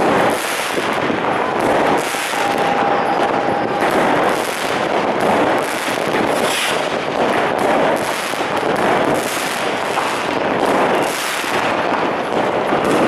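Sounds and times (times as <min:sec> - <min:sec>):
firework whistle: 0:00.0 - 0:07.0
firecracker bangs and crackling: 0:00.0 - 0:13.0.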